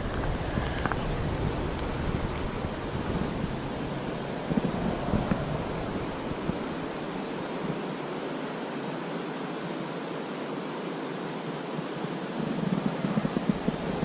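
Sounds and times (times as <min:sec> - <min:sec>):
low rumble: 0:00.0 - 0:07.8
creek water rushing: 0:00.0 - 0:14.0.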